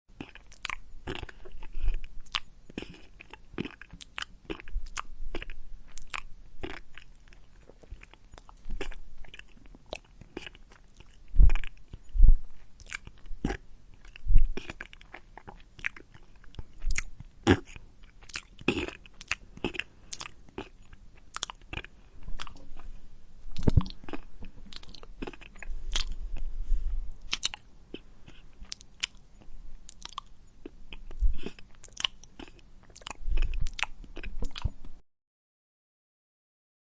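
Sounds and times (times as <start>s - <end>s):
heavy low thuds: 11.3s - 12.6s.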